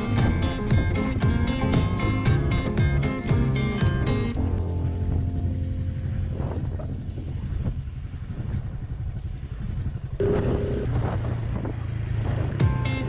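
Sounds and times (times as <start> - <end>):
motorcycle engine running: 0.0 - 13.0
wind noise on microphone: 4.8 - 12.9.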